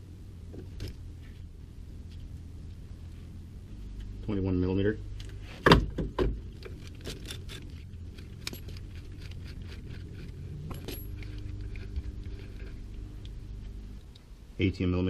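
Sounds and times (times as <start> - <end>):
faint low hum: 0.0 - 15.0
hand tools clinking on metal: 7.0 - 11.8.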